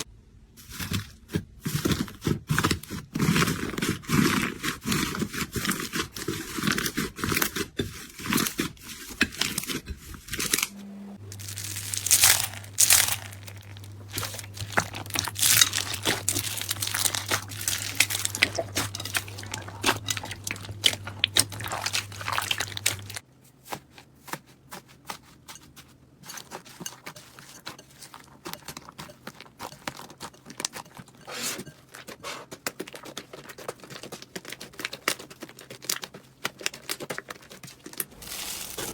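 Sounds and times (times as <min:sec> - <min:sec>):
crunchy slime crackling: 0:10.3 - 0:23.2, 0:31.9 - 0:38.9.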